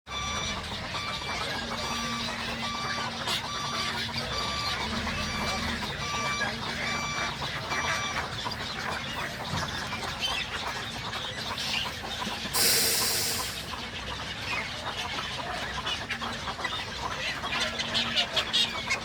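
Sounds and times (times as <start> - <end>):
egrets calling: 0.1 - 19.0
rush of hiss-like noise: 12.6 - 13.7.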